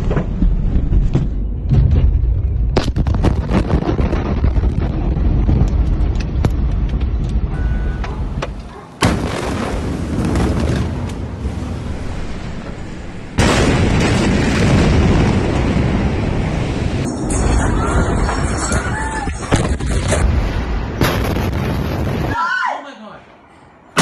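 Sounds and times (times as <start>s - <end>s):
loud explosion blast: 0.0s - 6.8s, 9.0s - 12.5s, 13.3s - 22.4s
heavy low rumble: 0.0s - 8.7s
sharp cracks and pops: 2.7s - 7.4s.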